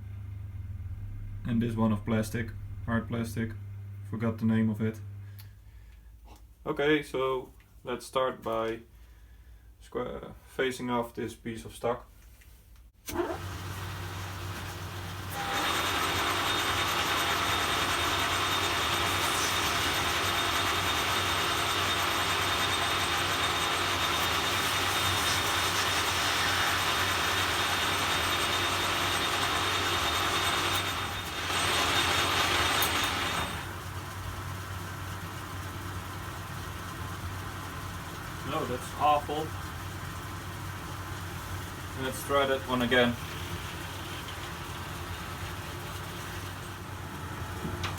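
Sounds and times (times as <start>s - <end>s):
lathe tool cutting metal: 15.3s - 33.8s
metal lathe humming: 15.3s - 33.8s.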